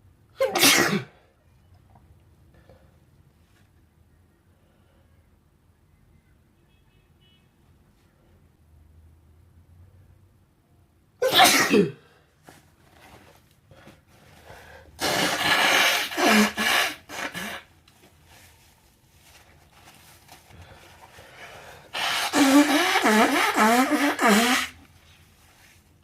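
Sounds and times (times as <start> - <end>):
person blowing nose: 0.4 - 1.1, 14.7 - 17.8, 21.0 - 24.8.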